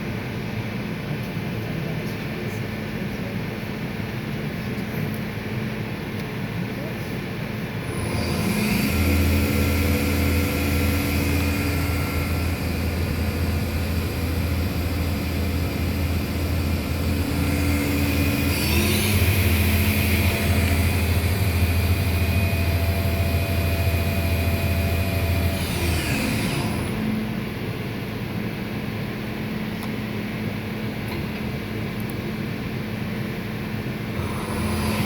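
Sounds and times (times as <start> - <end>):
lathe spindle hum: 7.6 - 35.0.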